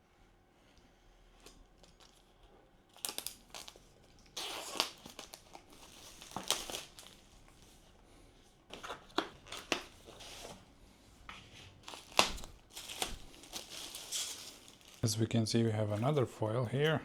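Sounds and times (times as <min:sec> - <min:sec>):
packaging wrapping crinkling: 0:01.4 - 0:07.8, 0:08.7 - 0:10.7, 0:11.7 - 0:15.2.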